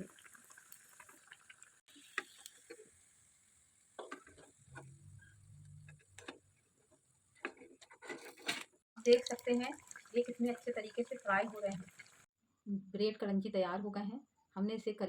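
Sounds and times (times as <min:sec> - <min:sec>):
faint sizzling of frying in oil: 0:00.0 - 0:07.3, 0:09.0 - 0:12.3.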